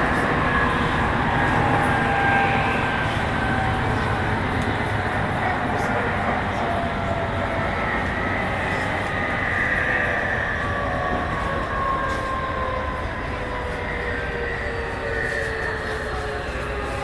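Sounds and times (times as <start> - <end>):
traction motor whine: 0.0 - 17.0
train wheels rumbling on rail: 0.0 - 17.0.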